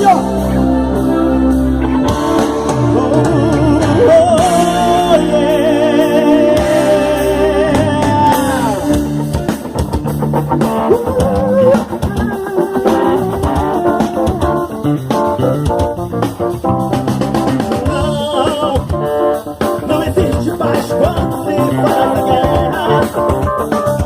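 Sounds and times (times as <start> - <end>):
live rock band: 0.0 - 24.0
wavering lead melody: 0.0 - 24.0.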